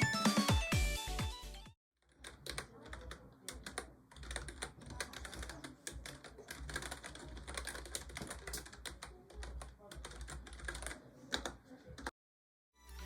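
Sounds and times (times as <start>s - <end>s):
computer keyboard typing: 2.1s - 12.1s.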